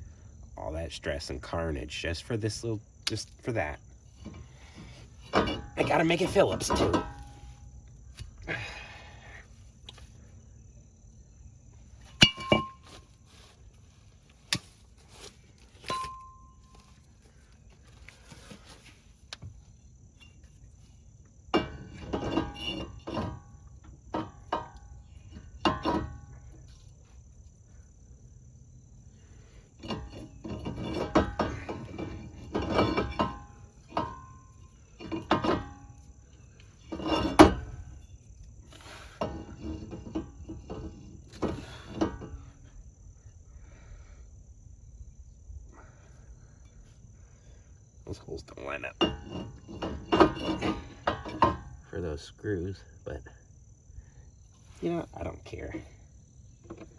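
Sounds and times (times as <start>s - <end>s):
faint high-pitched chirring: 0.0s - 56.9s
metal parts rattling: 4.1s - 7.6s, 12.0s - 13.0s
metal parts clinking: 12.1s - 13.0s.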